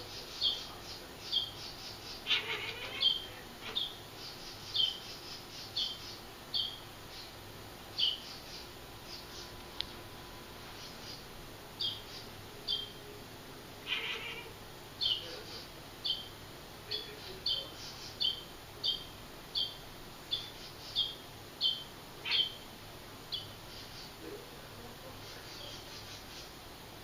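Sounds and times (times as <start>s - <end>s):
bird chirping high call: 11.8s - 13.0s, 17.0s - 22.6s
broader lower bird call: 20.4s - 22.6s.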